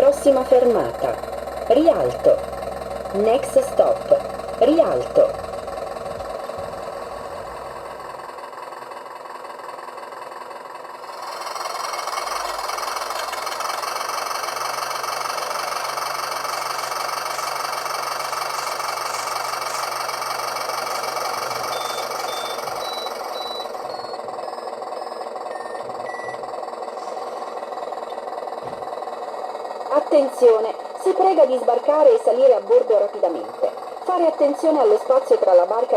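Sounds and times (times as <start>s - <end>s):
low hum: 0.0s - 35.9s
model boat engine running: 0.0s - 35.9s
faint high beeps: 21.6s - 26.4s.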